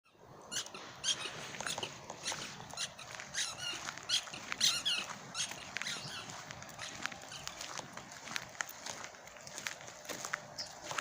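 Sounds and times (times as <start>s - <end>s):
squeaky toy ball squeaking: 0.5s - 6.9s.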